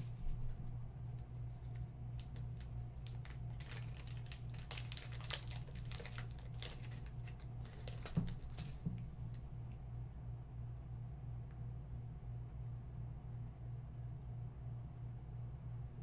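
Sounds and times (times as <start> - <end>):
low electrical hum: 0.0 - 16.0
packaging rustling and crinkling: 1.5 - 9.4.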